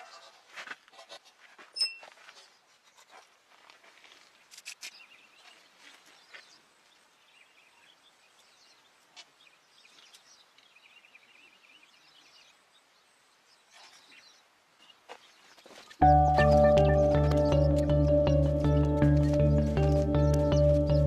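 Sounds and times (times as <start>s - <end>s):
soft chirping calls: 4.8s - 21.0s.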